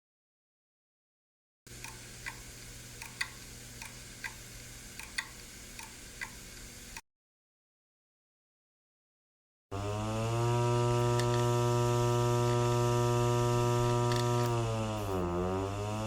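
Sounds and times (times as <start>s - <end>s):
hard disk clicking: 1.7s - 6.4s, 11.1s - 11.5s
hard disk spinning hum: 1.7s - 7.0s, 9.8s - 16.0s.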